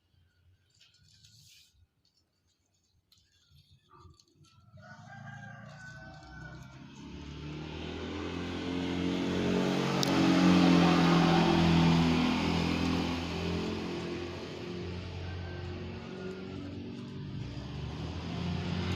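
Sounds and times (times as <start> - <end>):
vehicle engine passing by: 4.8 - 18.9.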